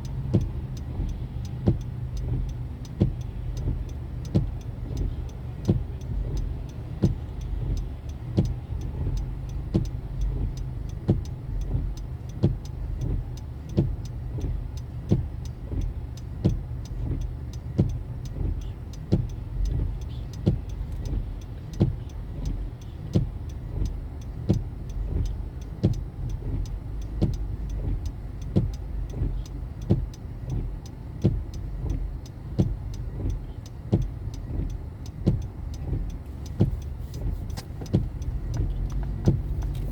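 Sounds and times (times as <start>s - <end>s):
car engine and road rumble: 0.0s - 39.9s
sharp ticking: 0.0s - 39.9s.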